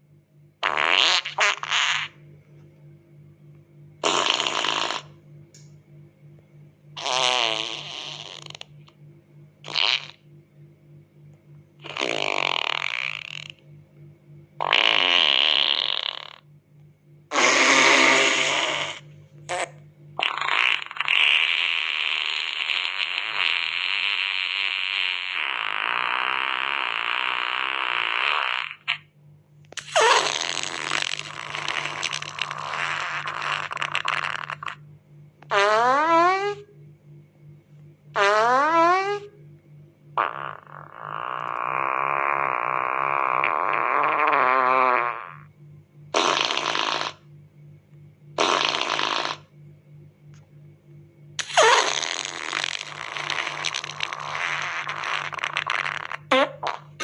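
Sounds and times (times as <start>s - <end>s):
fart sound effects: 0.6s - 2.2s, 4.0s - 5.2s, 7.0s - 8.8s, 9.6s - 10.2s, 11.8s - 13.6s, 14.6s - 16.5s, 17.3s - 29.1s, 29.8s - 34.8s, 35.4s - 36.7s, 38.1s - 39.4s, 40.2s - 45.5s, 46.1s - 47.3s, 48.4s - 49.6s, 51.4s - 57.0s.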